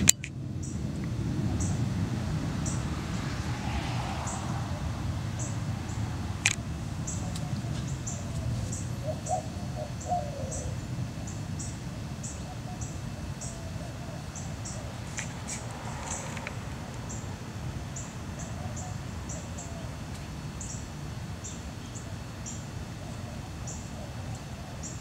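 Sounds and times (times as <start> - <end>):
low steady rumble: 0.0 - 25.0
bird calls: 7.0 - 25.0.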